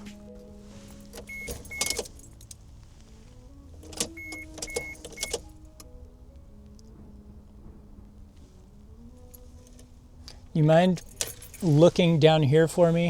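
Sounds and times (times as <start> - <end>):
soft background music: 0.0 - 13.0
sharp clicks: 3.8 - 5.9.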